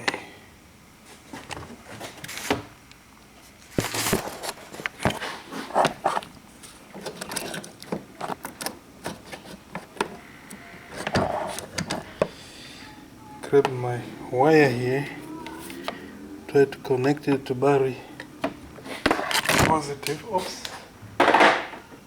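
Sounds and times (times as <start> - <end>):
wire being rummaged: 3.7 - 10.1, 18.8 - 20.8
hand tools clinking and rattling: 6.9 - 10.0.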